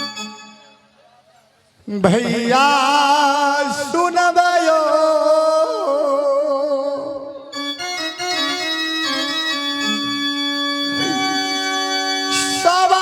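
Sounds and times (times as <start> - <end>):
organ-like keyboard music: 0.0 - 1.2, 2.2 - 13.0.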